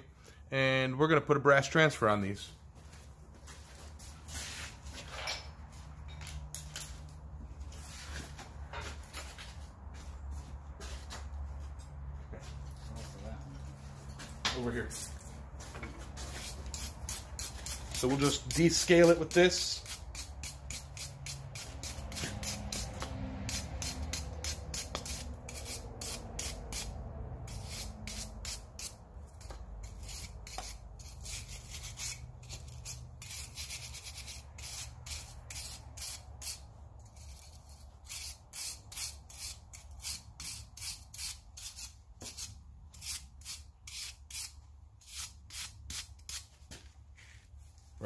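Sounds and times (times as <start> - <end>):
wire brush scrubbing metal: 16.3 - 46.5.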